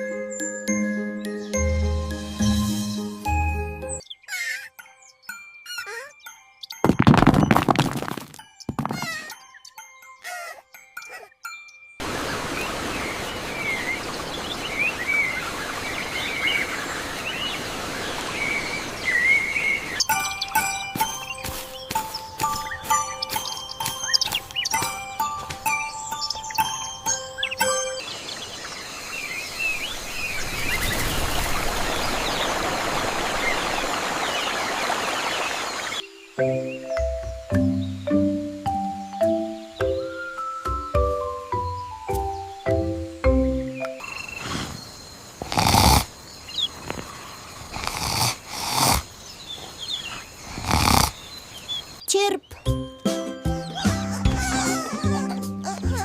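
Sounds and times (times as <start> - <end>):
bird chirps: 0.0 - 6.9, 8.4 - 12.0, 12.6 - 32.6, 33.4 - 47.8
light music with steady beat: 20.1 - 27.1, 36.4 - 44.0, 52.7 - 56.0
breathy snore-like sounds: 44.4 - 46.1, 47.6 - 49.1, 50.1 - 51.3.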